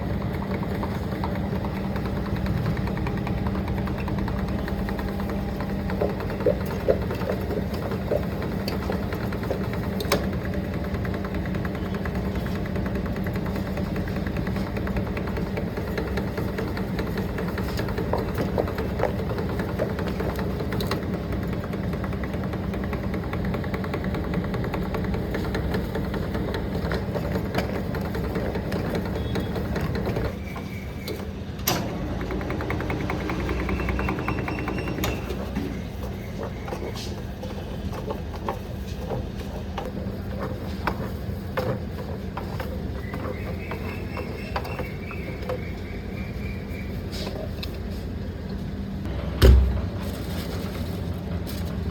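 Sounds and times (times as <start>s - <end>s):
sharp clicks and knocks: 0.0s - 45.9s
factory machinery humming: 25.2s - 37.8s, 48.2s - 51.9s.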